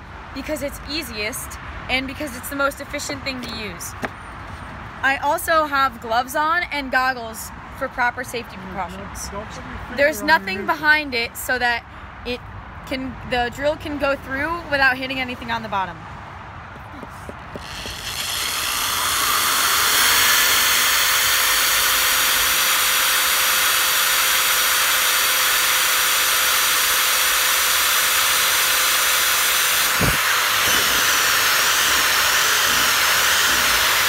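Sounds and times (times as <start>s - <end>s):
power drill boring through wood: 17.6s - 34.0s.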